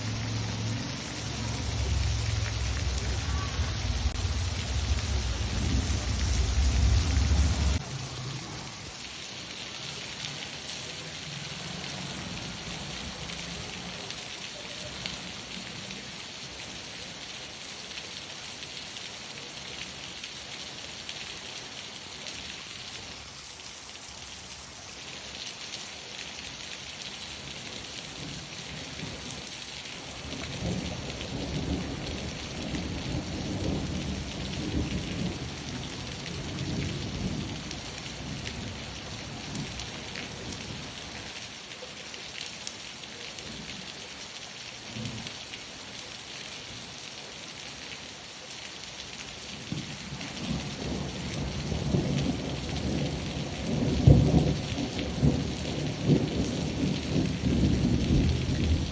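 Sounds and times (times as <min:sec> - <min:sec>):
thunder rumbling: 0:00.0 - 0:08.9, 0:30.1 - 0:39.8
rain falling: 0:00.0 - 0:58.9.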